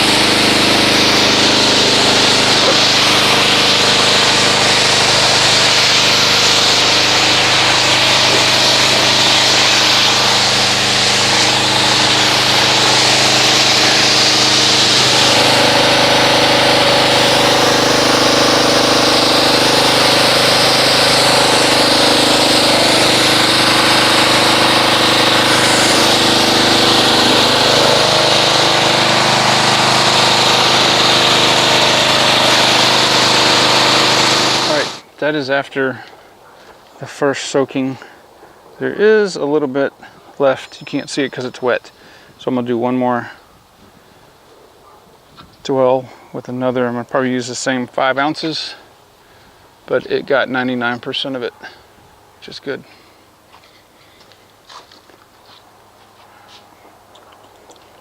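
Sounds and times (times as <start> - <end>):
water jet hissing: 0.0 - 35.0
pressure washer motor humming: 0.0 - 35.1.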